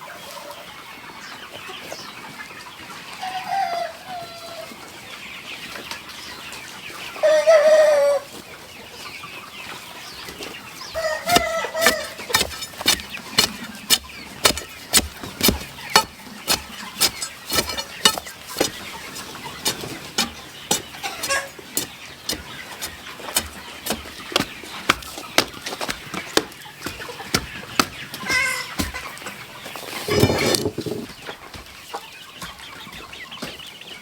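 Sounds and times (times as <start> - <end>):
chicken clucking: 0.0 - 34.0
chickens tapping: 10.2 - 34.0.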